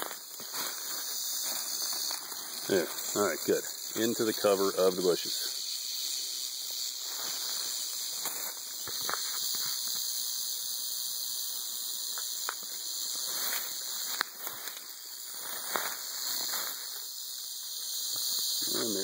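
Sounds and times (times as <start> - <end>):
crackles and rustles: 0.0 - 4.2, 12.1 - 17.1
rattlesnake rattle buzzing: 0.0 - 19.0.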